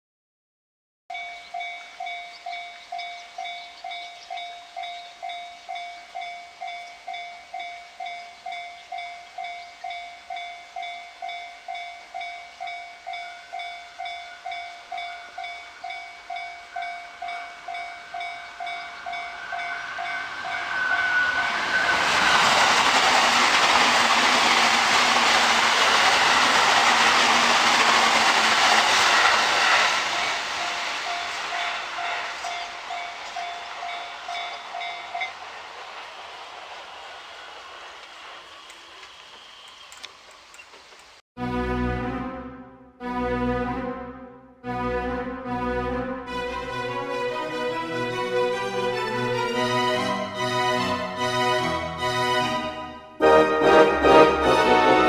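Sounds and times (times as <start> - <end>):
level crossing warning bell: 1.1 - 22.3, 30.1 - 35.6
train passing: 1.1 - 42.2, 45.4 - 55.0.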